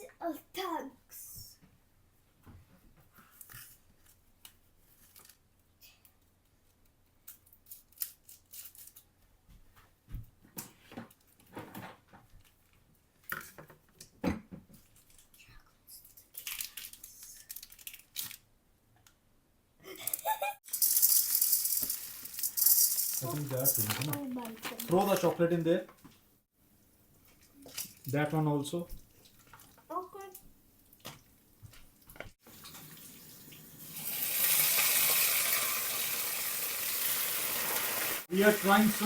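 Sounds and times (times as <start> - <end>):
wrapper crinkling: 16.2 - 18.4, 20.7 - 25.6
wrapper being torn open: 16.3 - 18.4.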